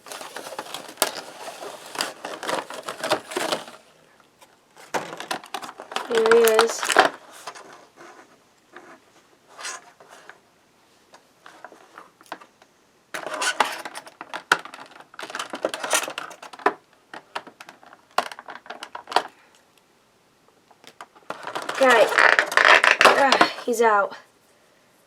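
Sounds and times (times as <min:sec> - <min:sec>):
plastic packaging clicks and crinkling: 0:00.0 - 0:08.9, 0:11.1 - 0:19.8, 0:20.6 - 0:23.6
packaging rustling: 0:00.0 - 0:10.4, 0:13.1 - 0:19.4, 0:20.8 - 0:23.6.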